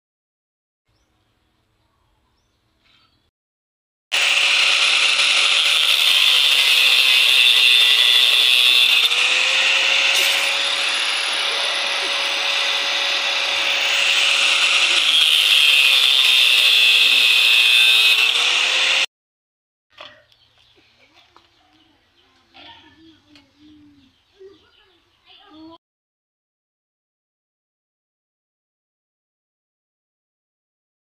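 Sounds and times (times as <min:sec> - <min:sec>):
power tool motor running: 0:04.1 - 0:19.1.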